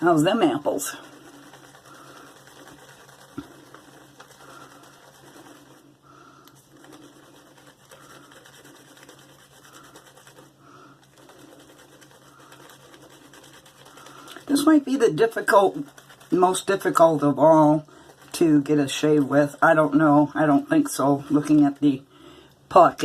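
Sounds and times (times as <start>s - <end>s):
shaving brush wet swishing: 0.0s - 22.0s.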